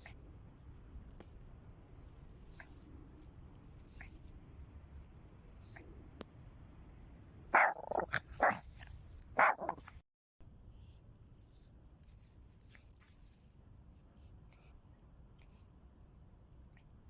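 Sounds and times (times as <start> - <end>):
small dog barking: 7.5 - 8.7, 9.4 - 9.9.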